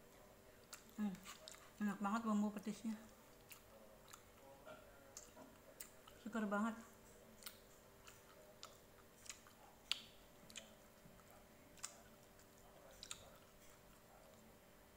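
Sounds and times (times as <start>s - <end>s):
wet mouth chewing clicks: 7.4s - 14.0s.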